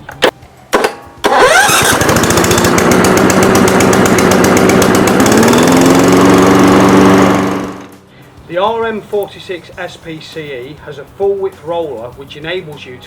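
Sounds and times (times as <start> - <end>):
lawnmower engine running: 0.8 - 8.0.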